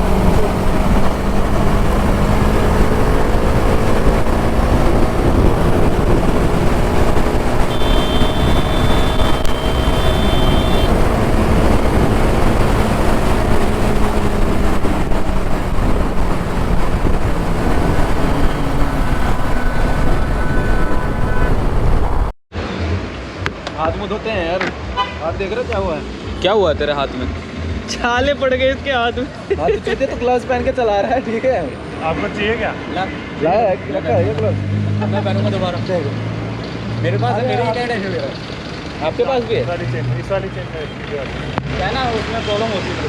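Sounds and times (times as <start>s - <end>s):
motorcycle engine running: 0.0s - 22.3s
wind noise: 0.0s - 22.9s.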